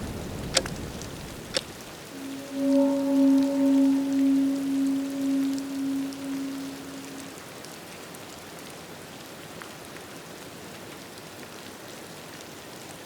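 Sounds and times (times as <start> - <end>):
ringing bell-like tone: 2.1 - 7.4.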